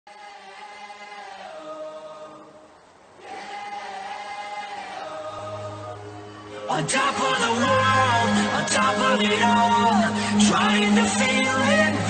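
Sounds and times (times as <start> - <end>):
choir-like voices singing chords: 0.1 - 12.0.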